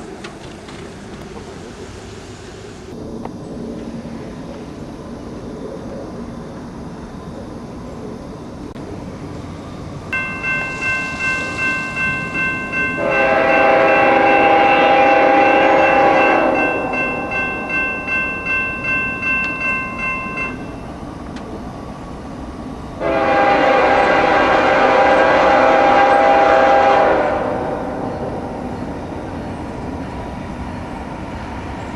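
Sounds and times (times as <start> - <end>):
warning bell ringing: 10.1 - 14.7, 15.4 - 21.0
locomotive horn blasts: 12.9 - 17.3, 23.0 - 28.6.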